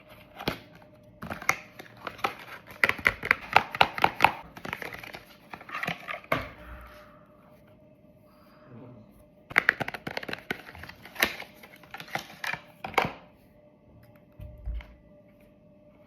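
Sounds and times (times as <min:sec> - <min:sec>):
plastic packaging crinkling: 0:00.0 - 0:06.4, 0:09.5 - 0:13.1.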